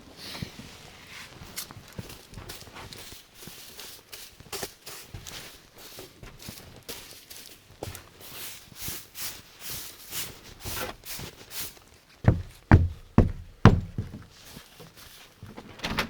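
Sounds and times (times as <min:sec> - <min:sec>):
quiet scuffing: 0:12.2 - 0:14.4
heavy thuds: 0:12.3 - 0:14.3.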